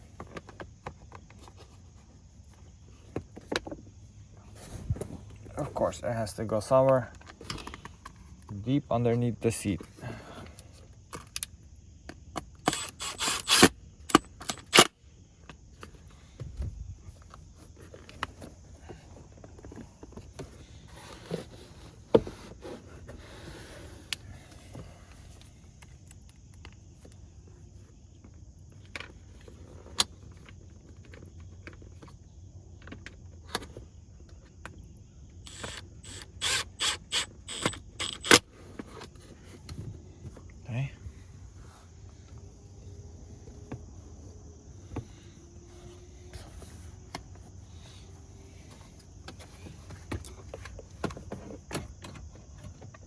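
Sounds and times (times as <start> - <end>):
plastic car parts clicking: 35.5 - 39.8.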